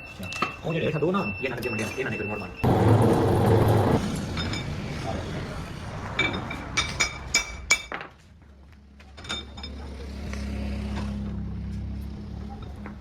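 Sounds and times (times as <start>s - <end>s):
metal tools clinking: 9.2s - 9.9s.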